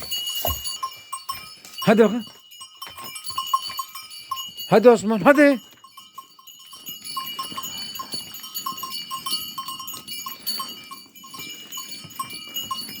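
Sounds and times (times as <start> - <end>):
livestock neck bells clinking: 0.0 - 13.0.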